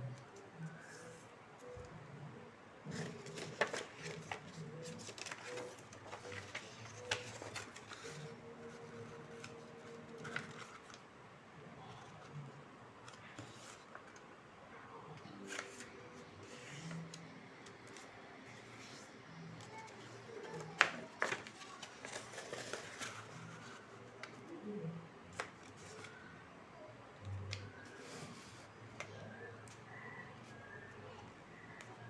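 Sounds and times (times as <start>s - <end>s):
paper crinkling and rustling: 2.8s - 11.0s, 13.0s - 14.3s, 15.2s - 24.5s, 25.3s - 26.3s.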